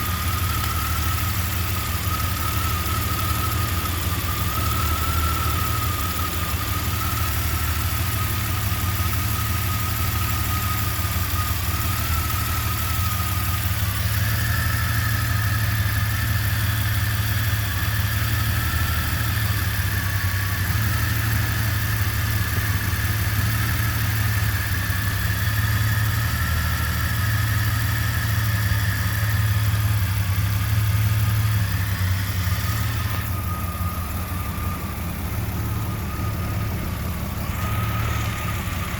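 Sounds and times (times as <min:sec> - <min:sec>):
car engine idling roughly: 0:00.0 - 0:38.9
higher whine: 0:28.3 - 0:38.9
high whine: 0:30.6 - 0:38.9.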